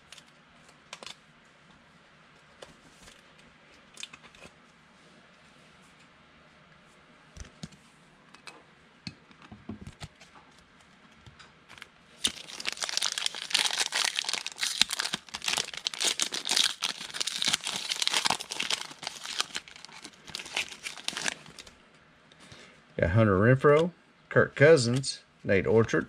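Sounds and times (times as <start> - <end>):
plastic wrapper tearing and crinkling: 0.9 - 1.2, 11.7 - 21.8.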